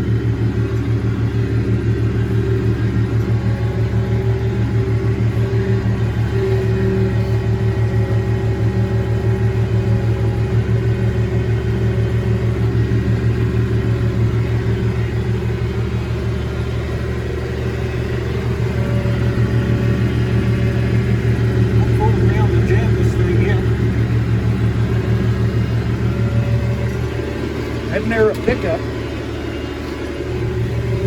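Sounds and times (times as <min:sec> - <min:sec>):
tractor diesel engine under load: 0:00.0 - 0:31.0.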